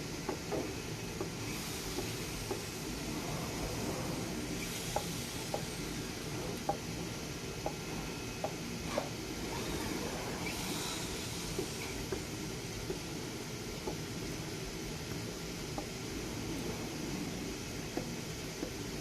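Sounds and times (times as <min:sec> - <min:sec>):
cutting machine hissing whir: 0:01.4 - 0:06.7, 0:08.9 - 0:12.2.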